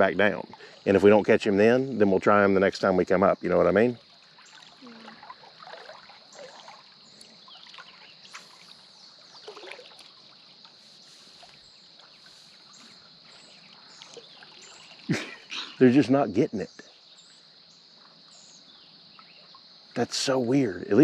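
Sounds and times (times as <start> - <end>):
creek water trickling: 0.0 - 21.0
wading splashes: 3.1 - 16.1
high-pitched hiss: 10.7 - 14.0, 20.0 - 21.0.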